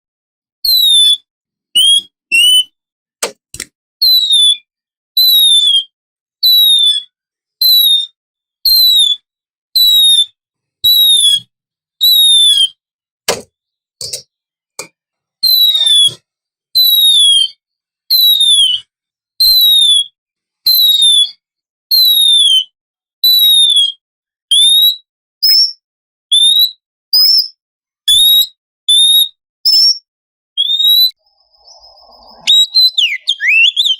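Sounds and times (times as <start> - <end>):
bird whistling descending notes: 30.6 - 33.9.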